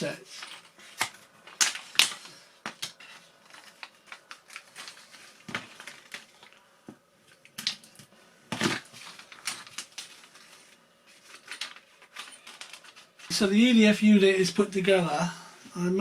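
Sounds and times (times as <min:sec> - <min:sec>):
small parts clicking and knocking: 0:11.2 - 0:13.3.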